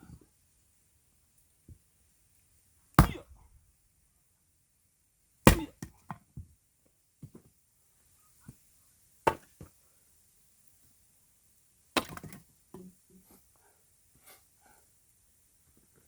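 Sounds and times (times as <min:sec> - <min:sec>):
axe splitting firewood: 0:02.9 - 0:03.5, 0:05.4 - 0:06.2, 0:09.2 - 0:09.7, 0:12.0 - 0:12.9.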